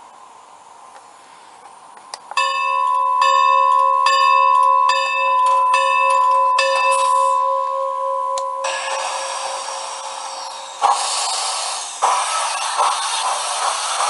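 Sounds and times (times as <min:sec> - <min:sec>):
model locomotive bell ringing: 0:02.4 - 0:10.8.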